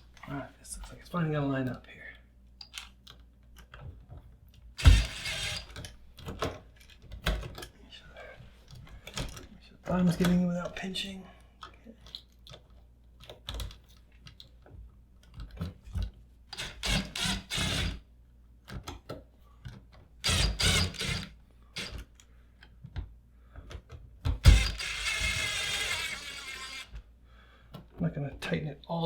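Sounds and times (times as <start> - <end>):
screwdriver clicking and rasping: 4.8 - 5.9, 16.6 - 18.0, 20.2 - 22.1, 24.4 - 27.0.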